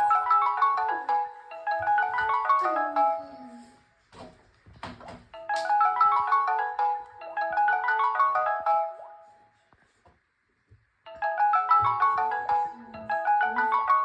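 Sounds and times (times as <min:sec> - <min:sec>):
phone alarm marimba melody: 0:00.0 - 0:03.6, 0:05.4 - 0:09.2, 0:11.1 - 0:14.0.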